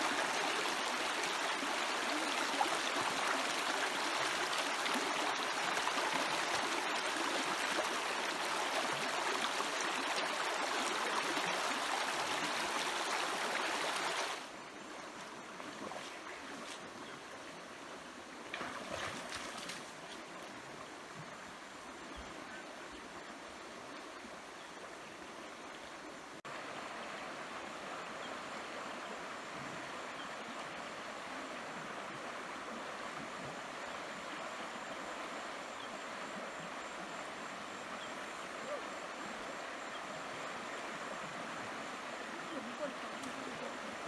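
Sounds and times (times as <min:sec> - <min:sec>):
stream water rushing: 0:00.0 - 0:21.0, 0:26.5 - 0:44.0.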